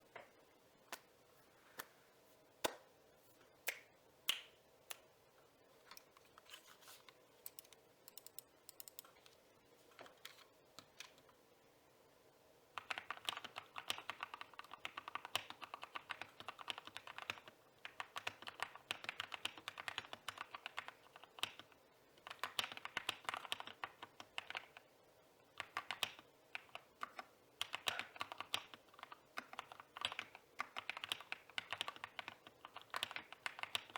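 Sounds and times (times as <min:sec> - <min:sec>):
mechanical keyboard typing: 0:07.5 - 0:09.1, 0:12.8 - 0:24.8, 0:25.5 - 0:33.9.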